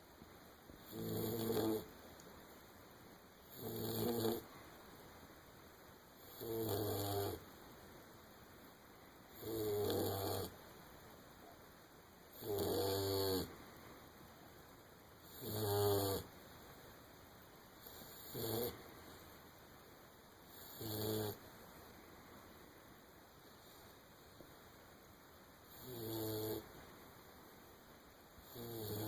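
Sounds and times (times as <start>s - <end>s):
puppy snoring: 0.8s - 1.9s, 3.4s - 4.5s, 6.2s - 7.5s, 9.3s - 10.6s, 12.3s - 13.6s, 15.2s - 16.3s, 17.8s - 18.8s, 20.4s - 21.4s, 25.7s - 26.7s, 28.4s - 29.0s.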